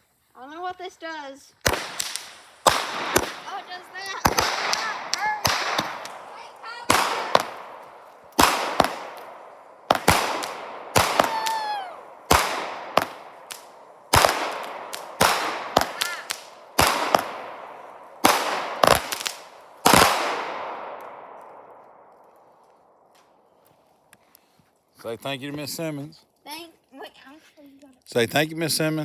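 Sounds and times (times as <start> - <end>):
firework bangs echoing: 1.6 - 22.1
firework whistling glide: 10.0 - 12.0.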